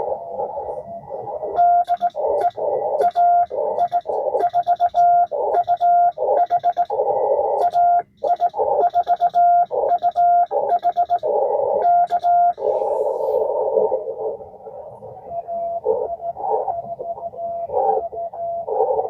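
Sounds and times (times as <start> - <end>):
radio band hiss: 0.0 - 4.6, 10.5 - 19.0
morse code sidetone beeps: 0.0 - 19.0.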